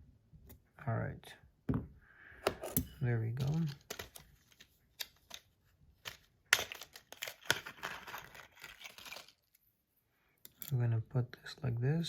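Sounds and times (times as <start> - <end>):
crinkly rustling: 3.4 - 9.5.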